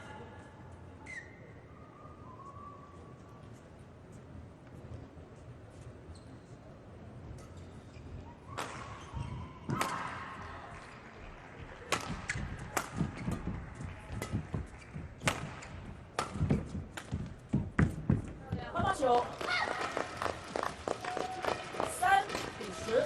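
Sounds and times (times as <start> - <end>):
shoe squeaks on court floor: 1.0 - 1.5, 5.9 - 6.6
rackets smacking shuttlecock: 8.6 - 9.1, 9.7 - 10.5, 11.8 - 18.3.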